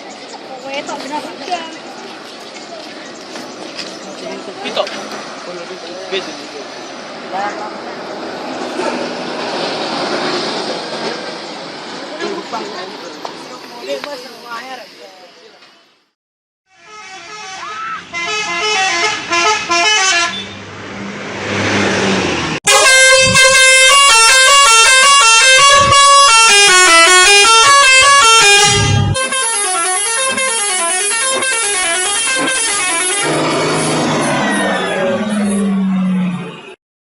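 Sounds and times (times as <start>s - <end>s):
air horns playing tunes: 16.7s - 20.5s, 22.7s - 33.9s.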